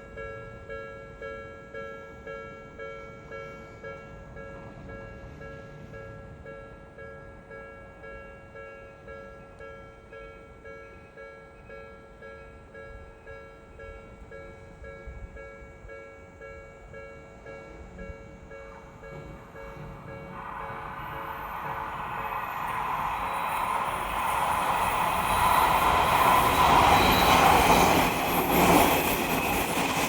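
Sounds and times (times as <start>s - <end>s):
train rushing past: 3.6s - 6.8s, 17.7s - 30.0s
level-crossing alarm dinging: 15.6s - 28.5s.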